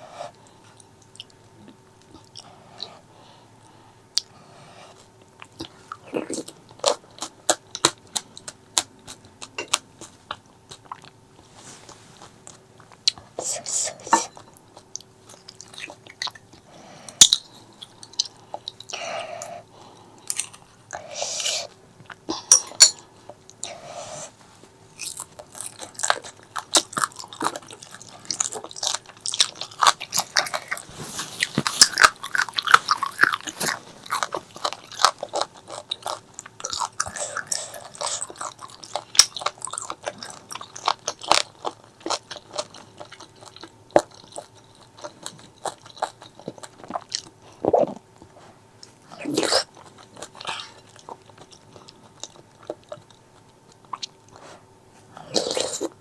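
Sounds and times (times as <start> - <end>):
biting and chewing crunches: 24.9 - 54.5
drawn-out mouth sounds: 47.5 - 48.1.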